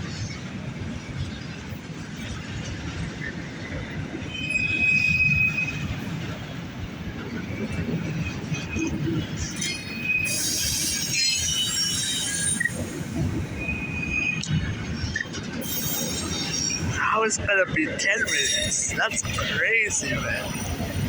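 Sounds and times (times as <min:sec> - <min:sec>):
train wheels rumbling on rails: 0:00.0 - 0:21.0
high-pitched wheel squeal: 0:04.3 - 0:06.0, 0:08.6 - 0:14.4, 0:15.6 - 0:17.0.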